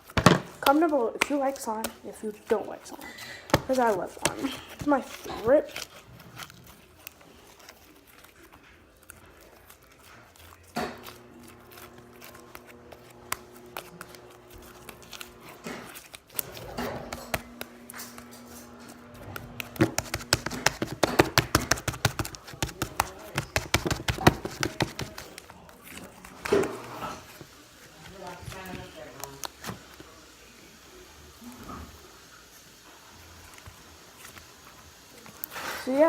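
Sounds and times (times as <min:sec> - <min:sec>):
slime squishing in hands: 0:00.0 - 0:30.3.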